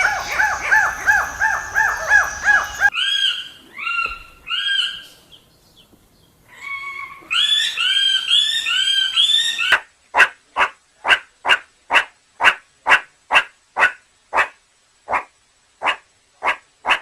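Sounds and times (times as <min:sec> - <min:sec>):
dog barking: 0:10.2 - 0:17.0.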